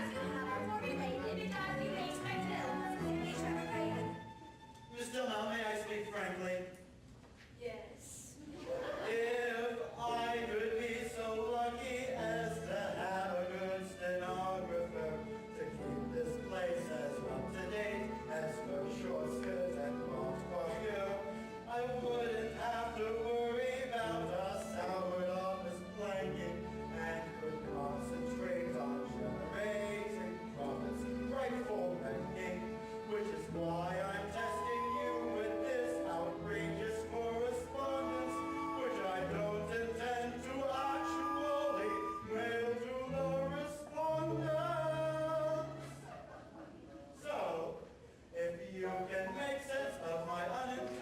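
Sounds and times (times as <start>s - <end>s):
instrumental accompaniment: 0.0s - 6.1s.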